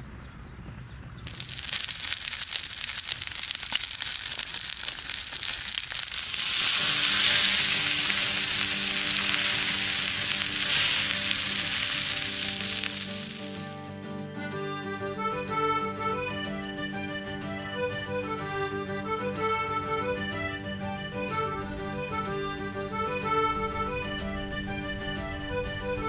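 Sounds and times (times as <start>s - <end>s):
food sizzling in hot fat: 1.4s - 13.8s
music with held notes: 6.8s - 26.0s.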